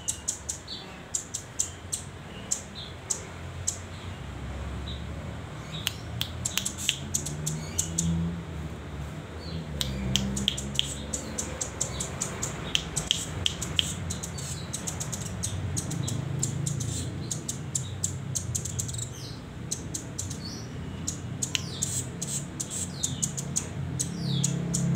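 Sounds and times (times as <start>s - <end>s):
young bird calling: 10.4s - 19.1s.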